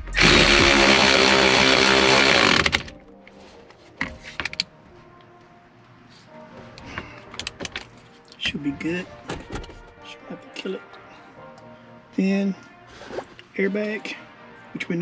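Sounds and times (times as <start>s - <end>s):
cordless power tool running: 0.0s - 2.9s.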